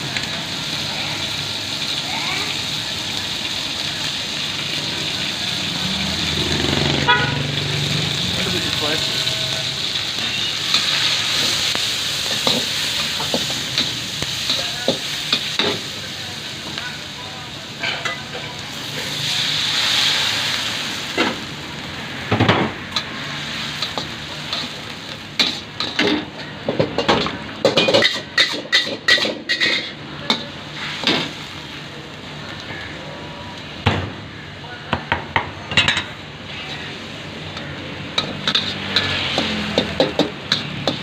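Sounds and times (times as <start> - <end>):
rice sizzling in a wok: 0.0 - 34.7, 36.0 - 41.0
metal spatula clanking on wok: 25.4 - 31.2, 37.5 - 41.0.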